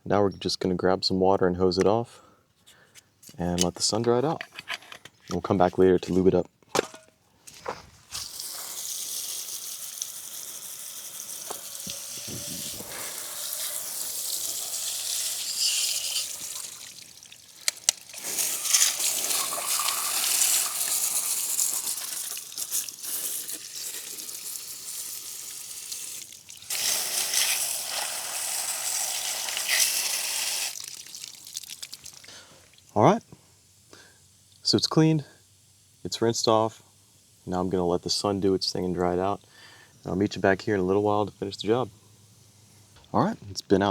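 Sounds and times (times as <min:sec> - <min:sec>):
garden hose spraying water: 0:07.6 - 0:42.7.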